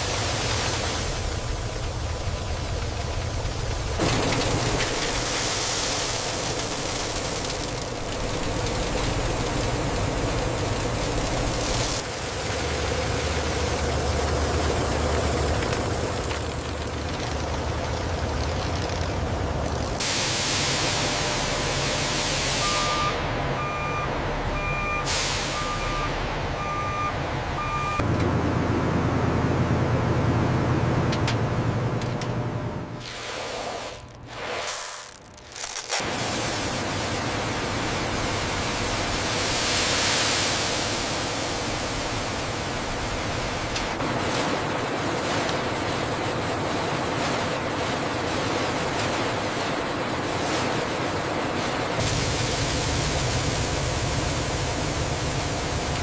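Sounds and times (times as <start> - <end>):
heavy vehicle engine running: 0.0 - 33.0, 40.8 - 56.0
truck reversing alarm beeps: 22.5 - 28.0
air brake hiss: 25.0 - 25.7.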